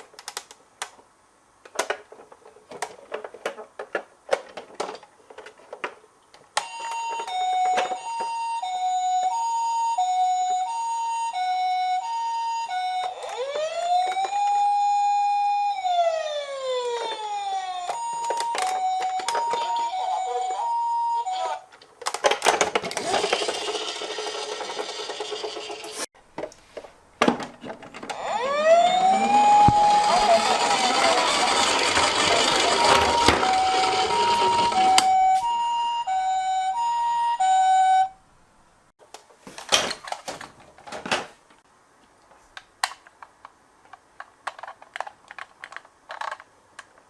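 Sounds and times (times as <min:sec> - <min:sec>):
two-tone ambulance siren: 0:06.6 - 0:21.7, 0:28.1 - 0:38.2
siren wail: 0:06.8 - 0:21.7, 0:28.1 - 0:38.2.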